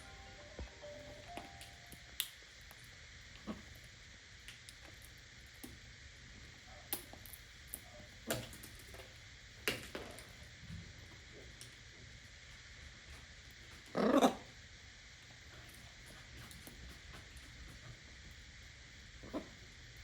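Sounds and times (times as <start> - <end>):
low steady hum: 0.0 - 3.4.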